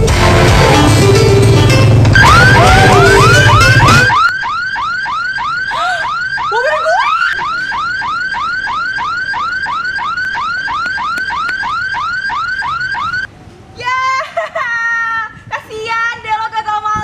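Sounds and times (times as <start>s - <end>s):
loud music: 0.0s - 4.3s
car alarm rising chirp: 2.2s - 13.3s.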